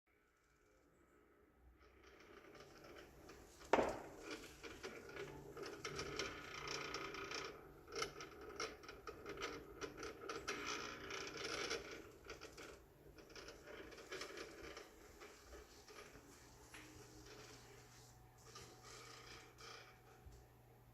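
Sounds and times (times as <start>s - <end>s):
faint low hum: 0.1s - 20.9s.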